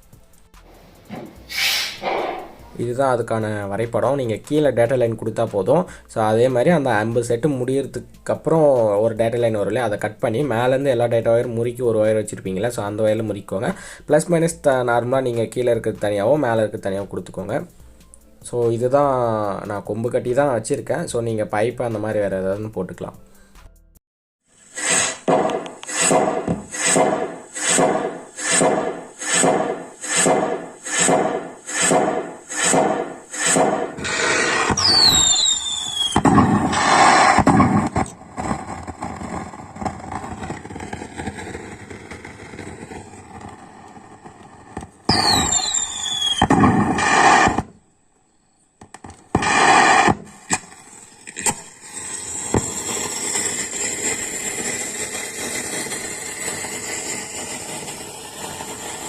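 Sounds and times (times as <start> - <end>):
firework bursts: 1.0 - 2.8, 24.6 - 47.8, 49.0 - 59.0
firecracker bangs: 1.1 - 2.7, 24.8 - 47.7, 49.3 - 50.7, 51.7 - 59.0
crackling hiss: 24.6 - 47.7, 48.8 - 59.0
whistling rockets falling in pitch: 24.8 - 47.8, 49.3 - 59.0.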